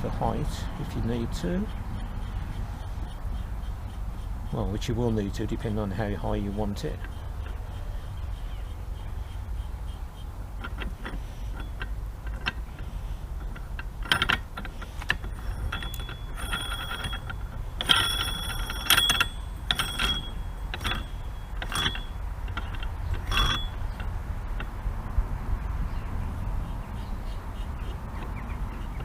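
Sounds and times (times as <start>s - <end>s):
metal parts clicking: 0.0s - 24.8s
ringing metallic clinks: 13.4s - 24.7s.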